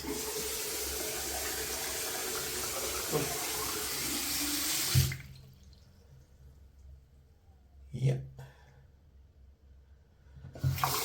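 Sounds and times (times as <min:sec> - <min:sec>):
tap running into a sink: 0:04.7 - 0:05.3, 0:10.6 - 0:11.0.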